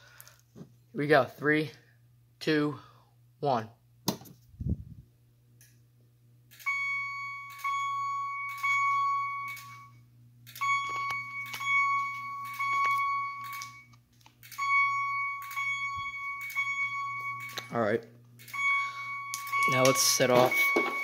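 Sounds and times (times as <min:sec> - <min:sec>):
ringing alarm chimes: 0:06.5 - 0:21.0.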